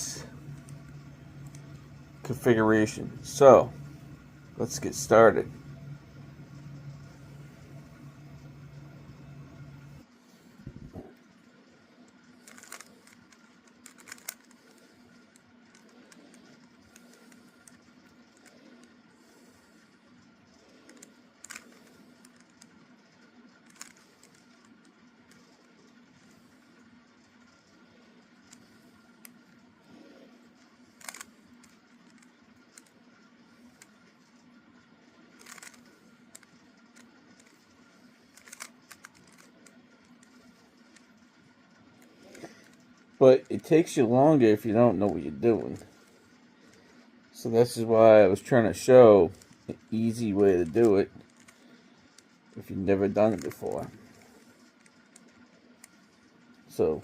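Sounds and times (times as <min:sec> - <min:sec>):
low steady hum: 0:00.0 - 0:57.0
plastic puzzle cube clicks: 0:12.4 - 0:14.6, 0:23.7 - 0:24.6, 0:31.0 - 0:32.9, 0:35.4 - 0:37.6, 0:38.3 - 0:40.3.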